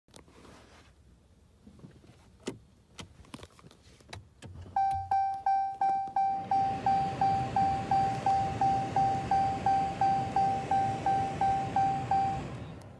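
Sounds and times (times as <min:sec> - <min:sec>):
car warning chime beeping: 0:04.7 - 0:12.9.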